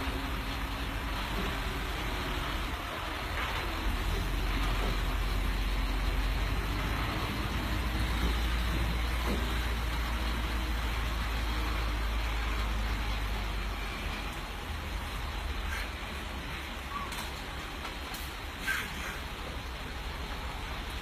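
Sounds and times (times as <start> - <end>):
road noise hiss: 0.0 - 21.0
truck engine rumbling: 0.0 - 21.0.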